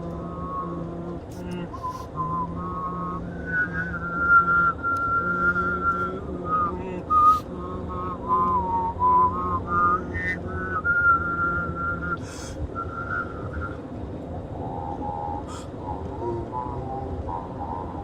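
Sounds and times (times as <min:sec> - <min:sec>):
low hummed voice note: 0:00.0 - 0:18.0
person whistling a melody: 0:01.8 - 0:06.1, 0:07.1 - 0:07.4, 0:08.3 - 0:13.8.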